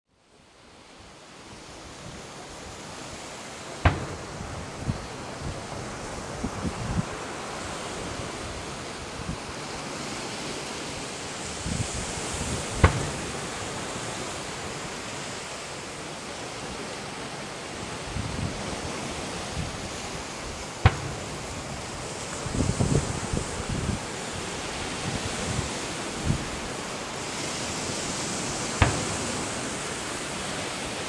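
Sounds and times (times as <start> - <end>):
wind hiss on microphone: 0.1 - 31.0
fireworks bangs: 3.7 - 8.3, 11.5 - 15.2, 19.2 - 31.0.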